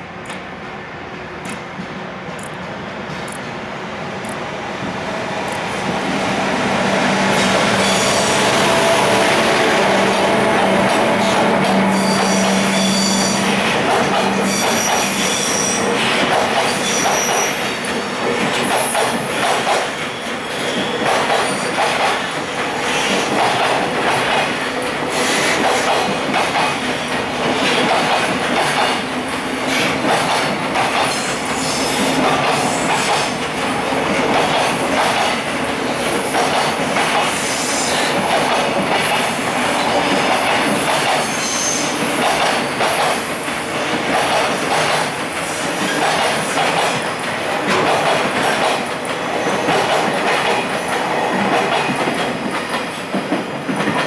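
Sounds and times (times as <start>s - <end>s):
train wheels clacking over rail joints: 5.5s - 54.0s
high wheel squeal: 7.1s - 18.2s.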